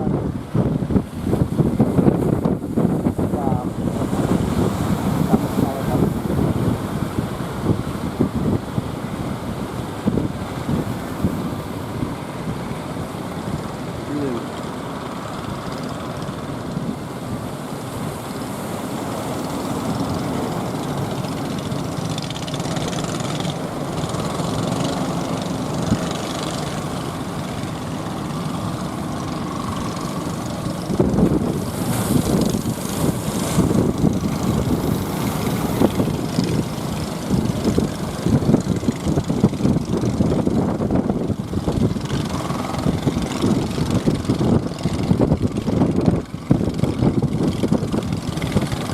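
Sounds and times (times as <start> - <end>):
boat engine running: 0.0 - 48.9.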